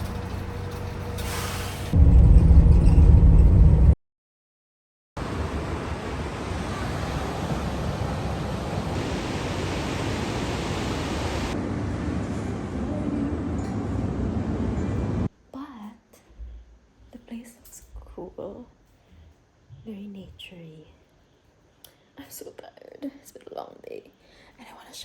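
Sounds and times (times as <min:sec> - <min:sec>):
vehicle engine rumbling: 0:00.0 - 0:04.0, 0:11.5 - 0:15.3.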